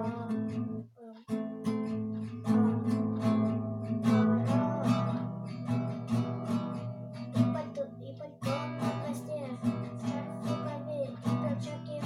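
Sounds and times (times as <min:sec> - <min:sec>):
acoustic guitar strumming: 0:00.0 - 0:12.0.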